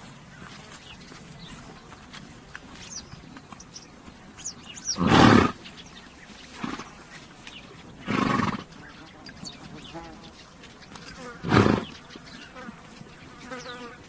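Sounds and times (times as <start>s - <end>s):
faint birds chirping: 0.0s - 14.0s
horse snorting: 4.8s - 5.7s, 6.5s - 7.2s, 8.0s - 8.8s, 11.2s - 12.0s.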